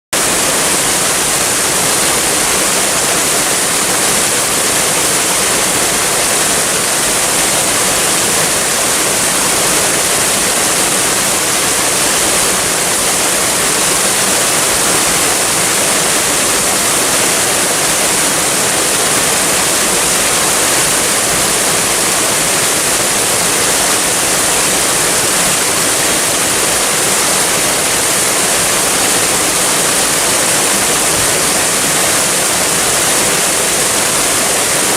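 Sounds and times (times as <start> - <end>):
waterfall rushing: 0.1 - 34.9.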